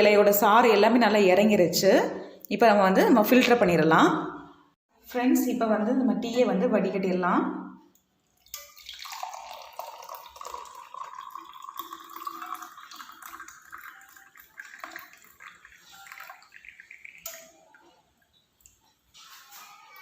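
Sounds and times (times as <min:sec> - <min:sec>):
tea pouring into a cup: 0:08.4 - 0:17.8.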